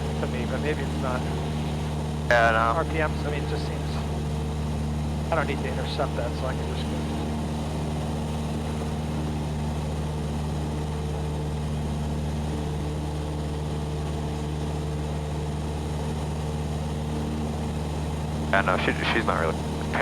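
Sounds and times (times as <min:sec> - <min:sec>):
aircraft engine and propeller droning: 0:00.0 - 0:20.0.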